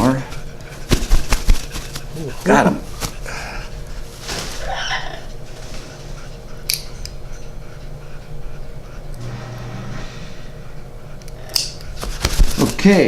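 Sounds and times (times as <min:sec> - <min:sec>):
steady low hum: 0:00.0 - 0:13.0
nail clipper click: 0:06.7 - 0:07.2, 0:11.2 - 0:11.9.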